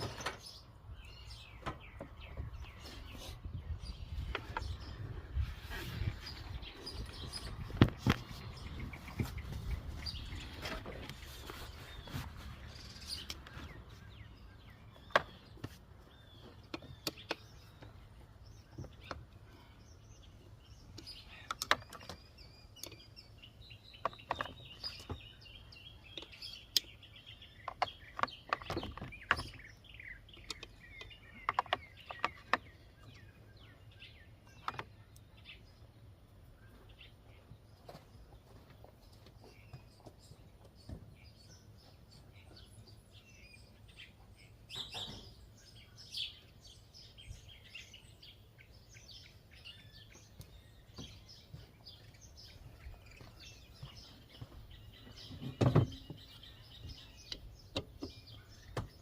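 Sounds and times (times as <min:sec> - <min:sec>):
birds chirping: 0:00.0 - 0:59.0.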